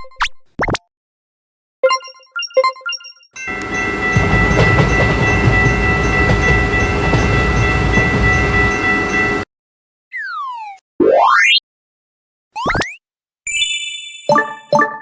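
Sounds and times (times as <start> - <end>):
steady shrill tone: 3.4 - 9.4
train rumbling and rattling: 3.4 - 9.4.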